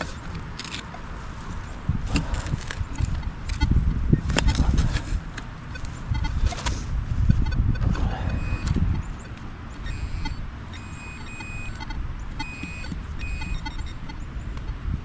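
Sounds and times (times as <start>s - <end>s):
handling rumble: 0.0s - 15.0s
wind noise: 0.0s - 15.0s
metal detector beeps: 2.8s - 5.0s, 5.7s - 14.8s.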